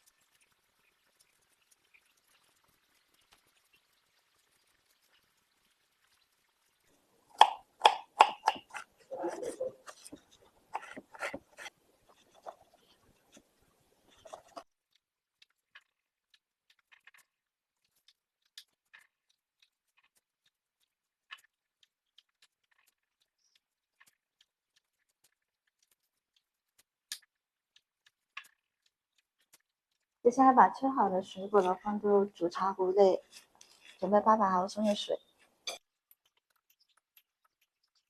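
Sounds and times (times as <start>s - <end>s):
knife cutting fruit on a board: 7.4s - 10.2s, 10.8s - 11.7s.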